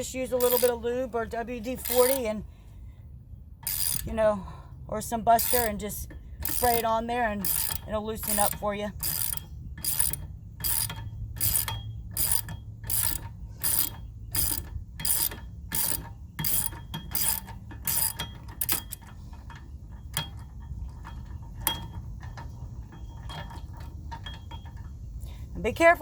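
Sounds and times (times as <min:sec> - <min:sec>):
socket ratchet wrench clicking: 0:00.4 - 0:00.8, 0:01.8 - 0:02.3, 0:03.6 - 0:04.1, 0:05.4 - 0:05.8, 0:06.4 - 0:19.1.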